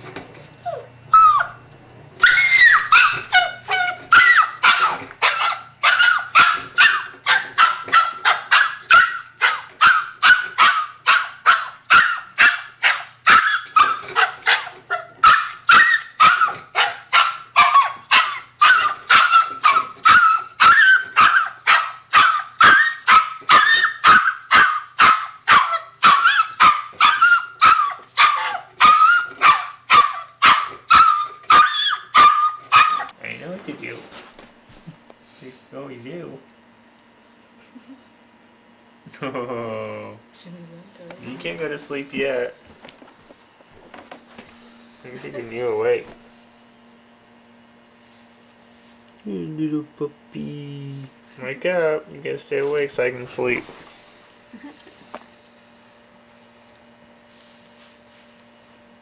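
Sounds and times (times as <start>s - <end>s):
puppy barking: 2.2s - 33.2s.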